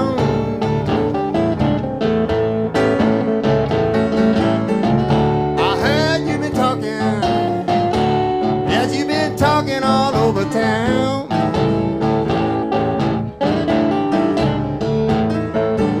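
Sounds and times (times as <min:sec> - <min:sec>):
person singing: 0:00.0 - 0:01.1, 0:05.6 - 0:12.0
guitar: 0:00.0 - 0:16.0.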